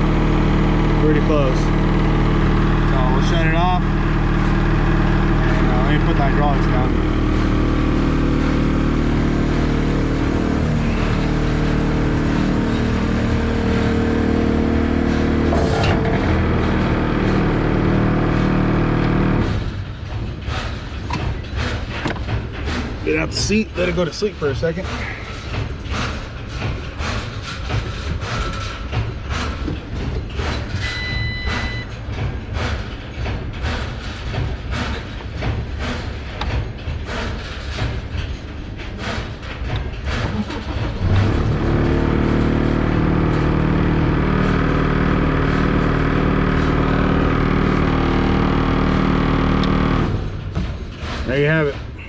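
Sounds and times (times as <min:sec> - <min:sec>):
low rumble: 0:00.0 - 0:20.4
diesel engine starting and idling: 0:00.0 - 0:52.0
short beep: 0:30.8 - 0:31.9.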